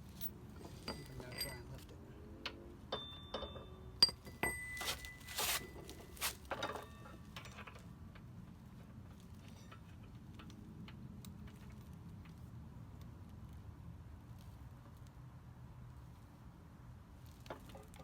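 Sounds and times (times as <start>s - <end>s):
metallic clink: 0.0s - 1.8s, 3.0s - 7.0s
scraping rustles: 4.3s - 6.5s.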